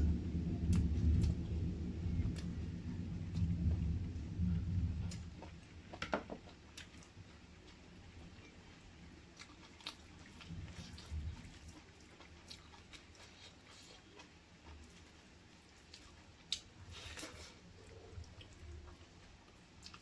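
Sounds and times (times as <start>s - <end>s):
person chewing: 6.4s - 20.0s.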